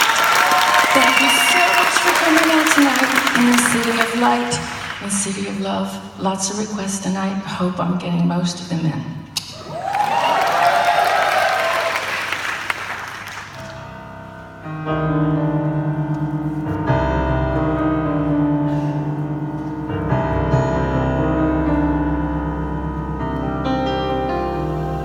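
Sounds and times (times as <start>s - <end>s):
audience applause: 0.0s - 5.1s, 9.6s - 13.8s
piano chords: 0.0s - 6.3s, 12.8s - 25.0s
deep bass notes: 13.7s - 25.0s.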